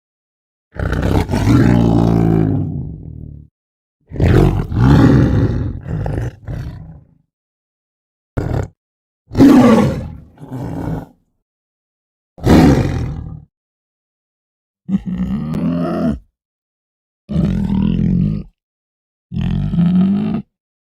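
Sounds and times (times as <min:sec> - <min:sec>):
tiger roaring and growling: 0:00.8 - 0:03.5, 0:04.1 - 0:07.2, 0:08.4 - 0:11.2, 0:12.4 - 0:13.5, 0:14.9 - 0:16.3, 0:17.3 - 0:18.6, 0:19.3 - 0:20.5.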